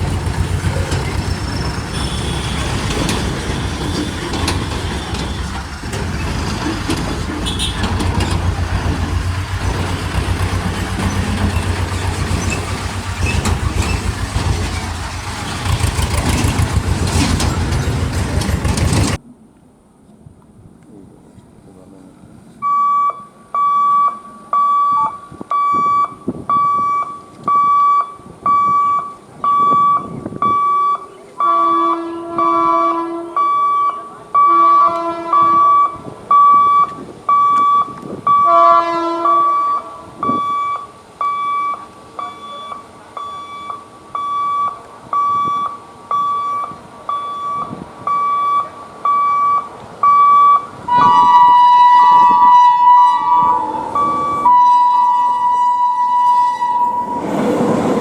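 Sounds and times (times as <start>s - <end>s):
level-crossing alarm beeping: 0.0s - 16.6s, 22.6s - 38.6s, 39.3s - 58.0s
train horn blasts: 1.7s - 5.7s, 7.4s - 8.1s, 31.4s - 33.6s, 34.4s - 35.9s, 38.4s - 40.4s, 50.9s - 57.2s.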